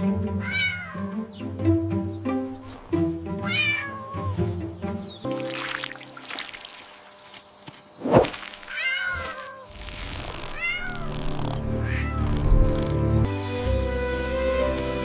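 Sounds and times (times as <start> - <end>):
cat meowing: 0.4 - 1.2, 3.4 - 4.4, 8.7 - 9.7, 10.5 - 11.1, 11.8 - 12.5.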